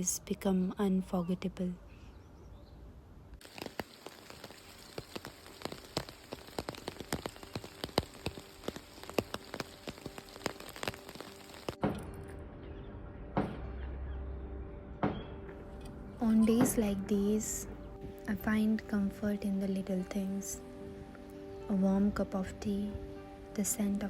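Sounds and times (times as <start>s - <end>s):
raindrops striking close by: 3.4s - 11.8s
steady rain: 3.4s - 11.8s.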